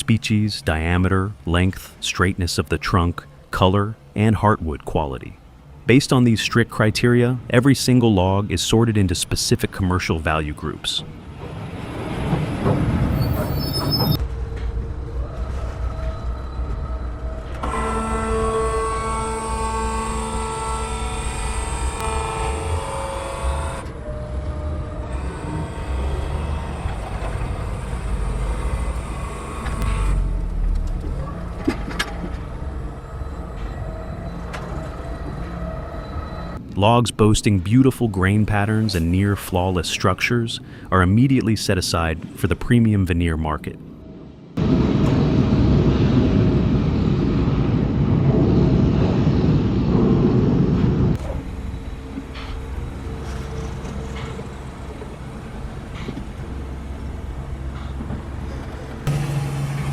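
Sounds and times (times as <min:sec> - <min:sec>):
diesel engine rumble: 0:12.0 - 0:36.8, 0:44.6 - 0:59.9.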